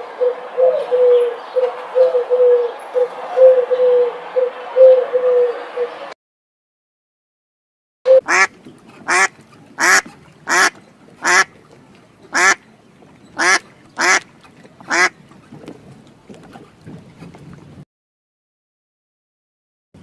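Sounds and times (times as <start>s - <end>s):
duck quacking: 8.2s - 11.5s, 12.3s - 12.6s, 13.4s - 15.2s.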